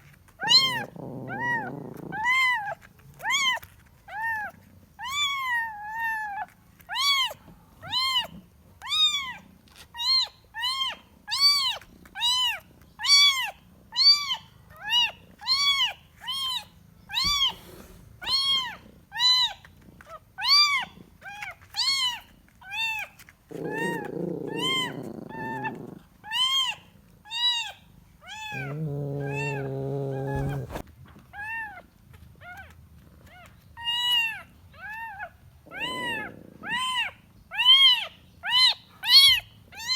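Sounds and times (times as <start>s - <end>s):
kitten meowing: 0.4s - 2.6s, 23.6s - 27.7s, 28.3s - 30.8s.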